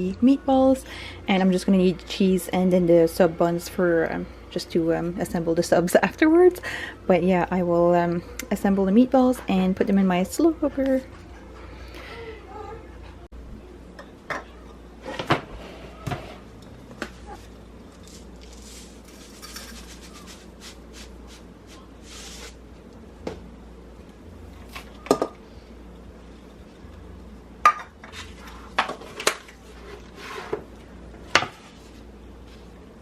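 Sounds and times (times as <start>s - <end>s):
dishes and utensils clinking: 19.3s - 20.3s.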